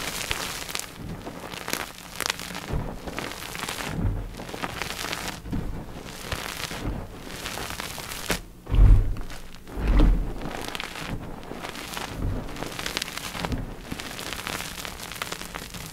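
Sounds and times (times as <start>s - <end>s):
chalk blocks crunching: 0.0s - 15.9s
heavy low thuds: 2.6s - 14.0s.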